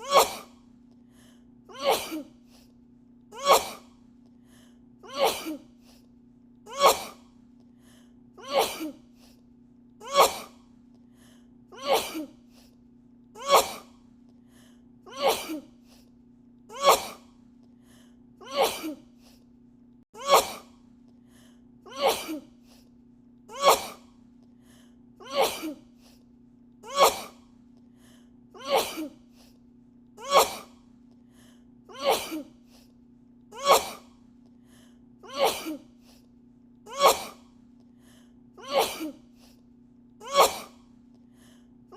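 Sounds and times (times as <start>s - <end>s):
woman sneezing: 0.0s - 0.6s, 1.7s - 2.3s, 3.4s - 3.9s, 5.1s - 5.7s, 6.7s - 7.3s, 8.4s - 9.0s, 10.0s - 10.6s, 13.4s - 14.0s, 16.8s - 17.2s, 20.2s - 20.8s, 21.9s - 22.5s, 23.5s - 24.1s, 25.2s - 25.8s, 26.9s - 27.4s, 28.6s - 29.2s, 30.2s - 30.8s, 31.9s - 32.6s, 33.6s - 34.1s, 35.3s - 35.9s, 36.9s - 37.5s, 38.6s - 39.2s, 40.2s - 40.8s
faint steady hum: 0.0s - 41.9s.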